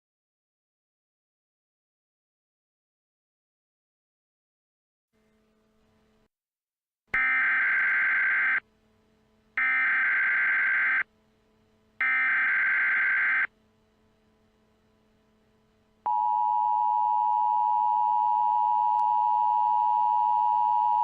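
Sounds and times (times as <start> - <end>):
faint low hum: 7.2 - 21.0.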